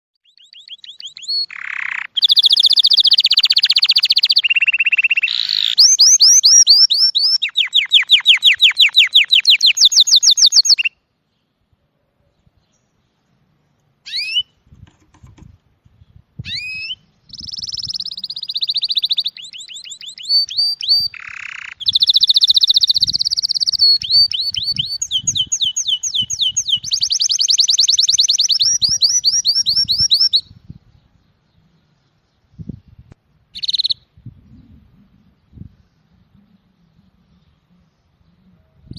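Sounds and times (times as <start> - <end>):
songbird singing trills: 0.2 - 11.6, 12.2 - 14.6, 15.9 - 38.9.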